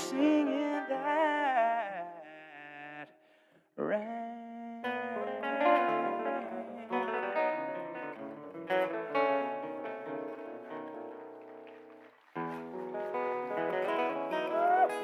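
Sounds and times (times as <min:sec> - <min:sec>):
strummed guitar chords: 0:04.8 - 0:15.0.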